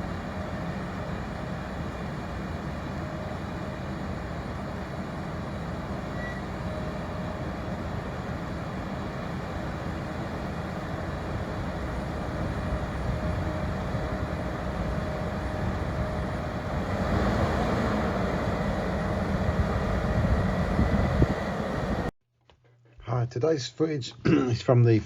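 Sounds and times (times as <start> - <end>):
diesel farm machinery rumbling: 0.0 - 22.1.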